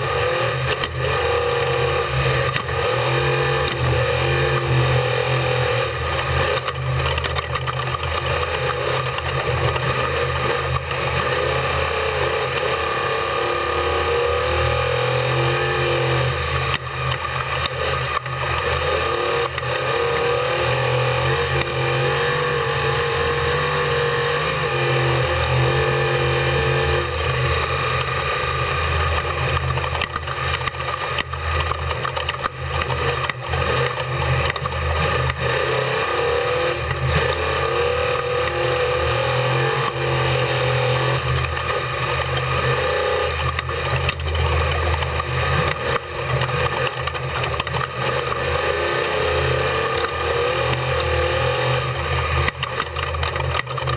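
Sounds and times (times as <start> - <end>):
truck engine running: 0.0 - 53.9
knocks and rattles: 52.2 - 53.9.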